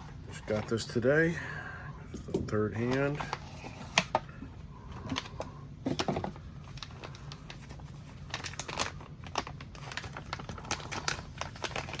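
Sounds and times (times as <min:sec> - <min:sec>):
packaging crinkling and rustling: 0:02.5 - 0:12.0.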